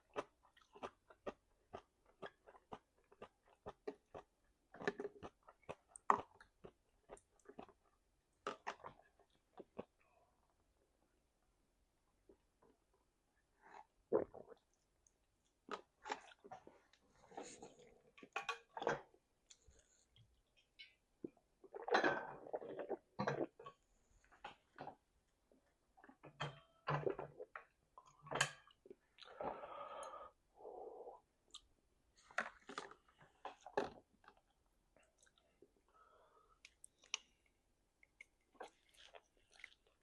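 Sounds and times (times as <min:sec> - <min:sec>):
person chewing: 0:36.6 - 0:40.0.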